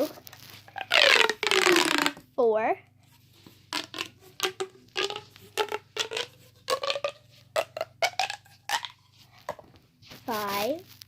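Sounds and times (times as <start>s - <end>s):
plastic fidget toy clicking: 3.7s - 8.9s.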